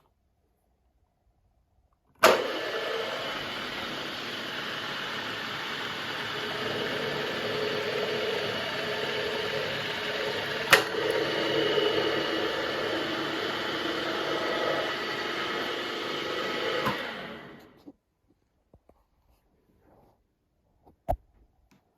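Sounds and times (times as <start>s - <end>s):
machine whirring: 2.2s - 17.8s
sharp click: 10.7s - 11.0s.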